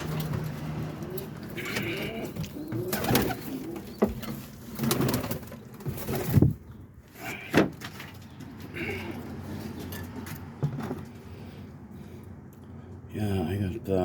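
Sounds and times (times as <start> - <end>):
knocks and rustling of birds moving: 0.0 - 12.4
pigeons cooing: 0.6 - 6.4.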